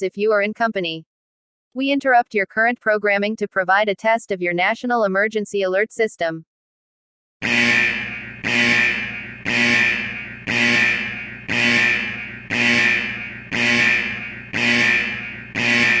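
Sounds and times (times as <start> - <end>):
pulsing electronic alert tone: 7.4 - 16.0.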